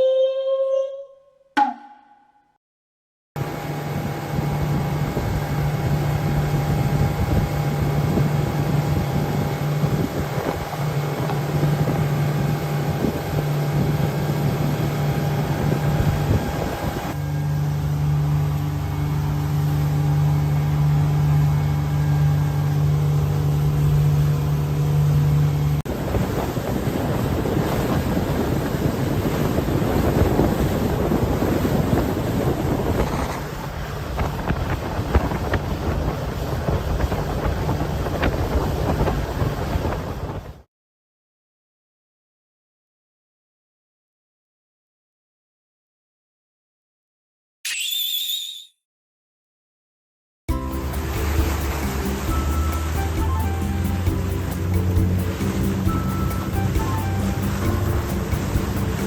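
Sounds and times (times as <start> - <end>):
wind buffeting microphone: 3.4 - 17.2, 25.9 - 40.6
water noise: 3.4 - 40.5, 50.5 - 59.0
motorboat engine running: 3.4 - 40.6, 50.5 - 59.0.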